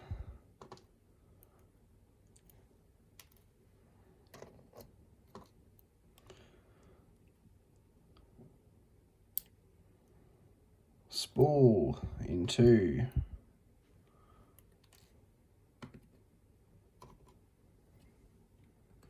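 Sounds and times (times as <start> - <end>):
small metal lock parts clicking: 3.2 - 3.5.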